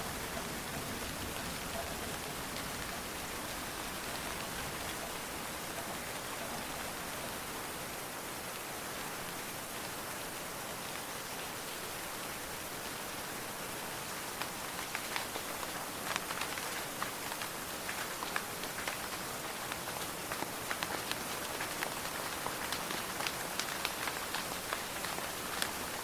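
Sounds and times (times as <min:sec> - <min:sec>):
steady rain falling: 0:00.0 - 0:26.0
sharp raindrop ticks: 0:14.4 - 0:26.0.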